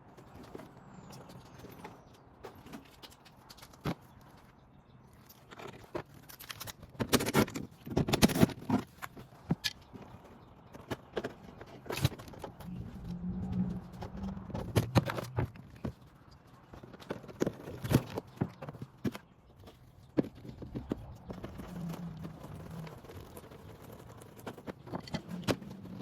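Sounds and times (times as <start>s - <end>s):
low hum: 12.6s - 16.1s.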